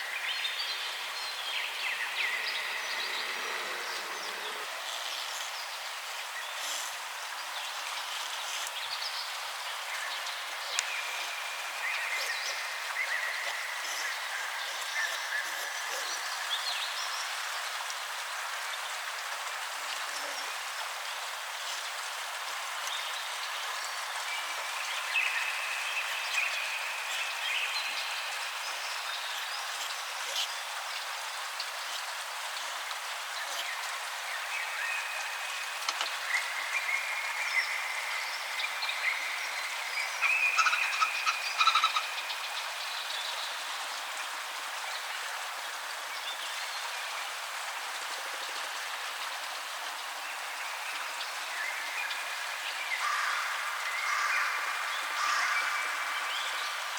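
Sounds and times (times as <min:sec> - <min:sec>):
steady hiss: 0:00.0 - 0:56.9
frog chorus: 0:01.6 - 0:05.6, 0:40.1 - 0:42.4.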